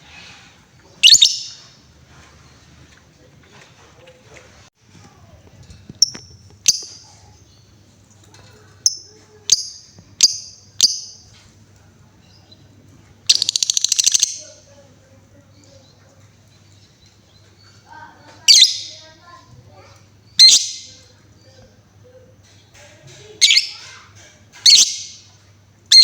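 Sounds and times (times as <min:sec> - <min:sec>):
bird chirping and trilling: 0:01.0 - 0:01.8, 0:08.8 - 0:11.3, 0:13.3 - 0:14.6, 0:16.6 - 0:19.2, 0:20.2 - 0:21.1, 0:23.4 - 0:24.0, 0:24.6 - 0:25.3.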